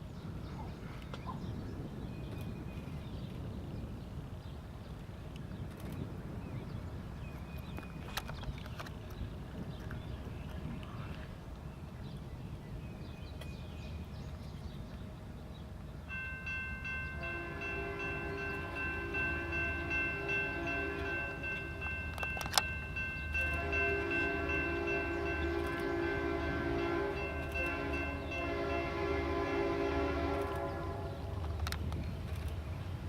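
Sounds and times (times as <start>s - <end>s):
locomotive air horn chord: 17.1s - 22.2s, 23.3s - 31.4s.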